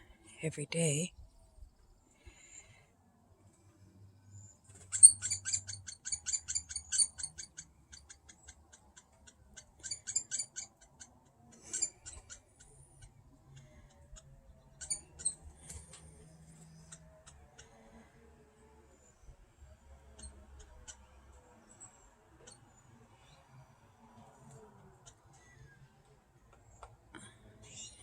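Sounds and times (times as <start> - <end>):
young woodpecker chattering: 4.9 - 18.0.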